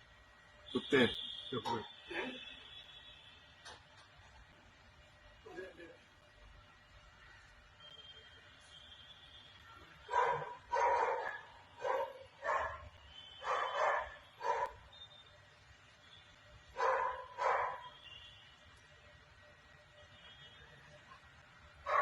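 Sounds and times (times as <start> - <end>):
dog barking: 10.0 - 14.8, 16.8 - 18.0.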